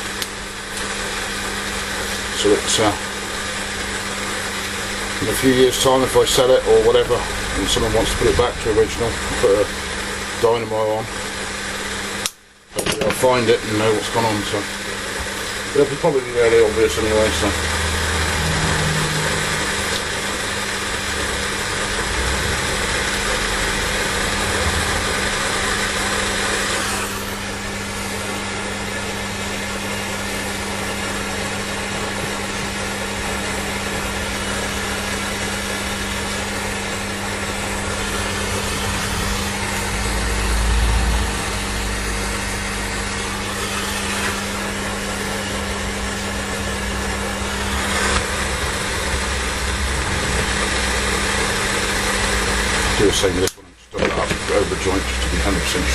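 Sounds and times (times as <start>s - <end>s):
small electric motor and fan humming: 0.0s - 55.9s
rushing air hiss: 15.2s - 28.0s, 34.4s - 45.0s
brief low rumble: 17.6s - 26.8s.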